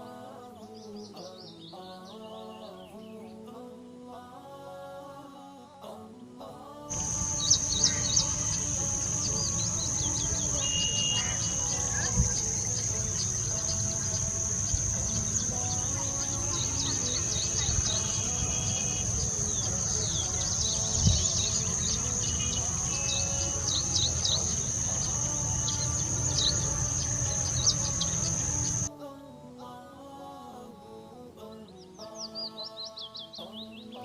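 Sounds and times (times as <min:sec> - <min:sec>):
quiet music: 0:00.0 - 0:34.0
high-pitched insect drone: 0:06.9 - 0:28.9
small birds chirping: 0:06.9 - 0:28.9.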